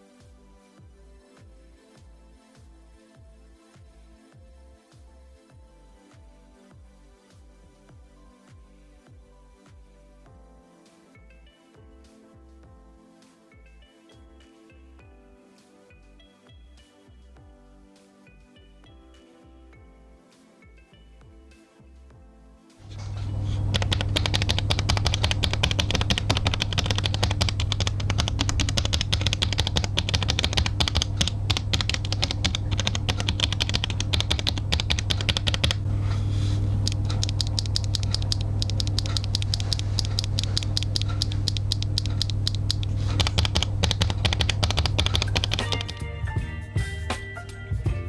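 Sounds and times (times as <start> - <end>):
typing on mechanical keyboard: 22.9 - 35.9, 36.8 - 46.0
steady low hum: 22.9 - 45.6.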